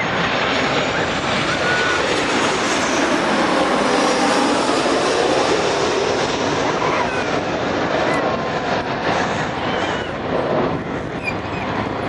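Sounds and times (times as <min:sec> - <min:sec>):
jet airliner engine rush: 0:00.0 - 0:12.0.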